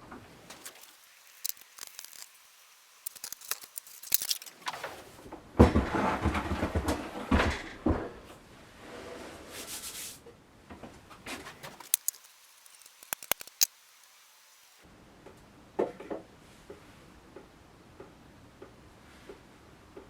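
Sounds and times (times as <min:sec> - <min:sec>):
shuffling and scraping: 0:00.1 - 0:02.4, 0:03.0 - 0:07.6, 0:10.9 - 0:13.7
knocks: 0:05.6 - 0:08.3
sharp metallic clicks: 0:11.8 - 0:13.8.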